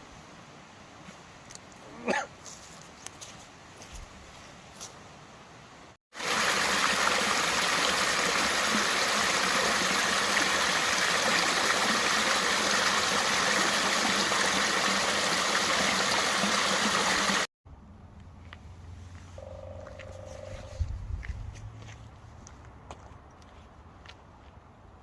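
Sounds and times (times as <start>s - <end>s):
stream water rushing: 6.1s - 17.5s.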